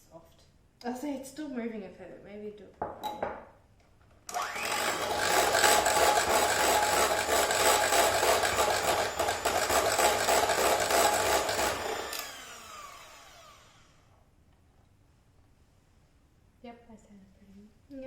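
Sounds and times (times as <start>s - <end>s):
electric mixer whirring: 4.3s - 14.1s.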